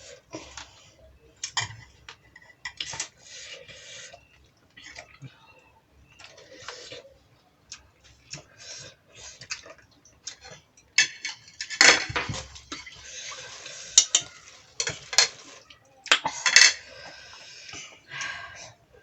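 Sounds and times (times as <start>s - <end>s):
utensils clinking on plates: 1.4s - 3.2s, 10.3s - 17.2s.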